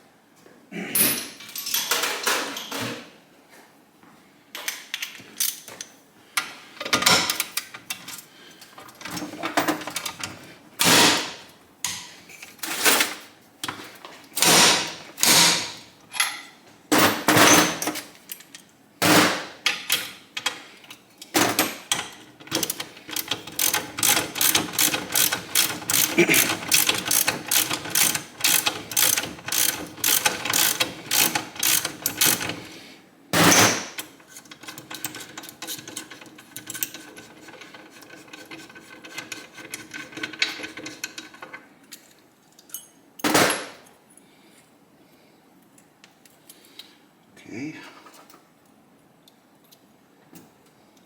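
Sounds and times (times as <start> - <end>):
ratchet wrench clicking: 22.5 - 32.5.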